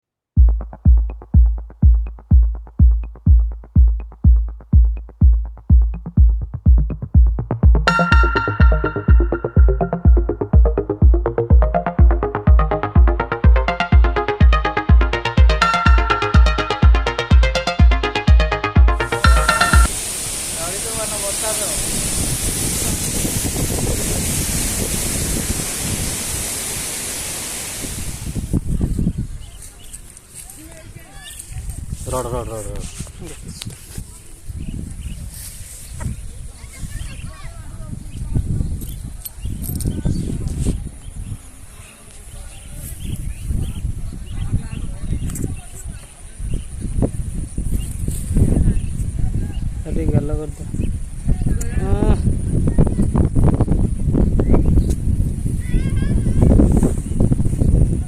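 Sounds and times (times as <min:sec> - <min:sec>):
deep kick drum: 0:00.4 - 0:19.9
heavy low thumps: 0:00.4 - 0:19.9
synth chords: 0:00.4 - 0:20.0
wind buffeting microphone: 0:21.8 - 0:26.8, 0:27.7 - 0:30.0, 0:32.9 - 0:41.8, 0:42.4 - 0:58.0.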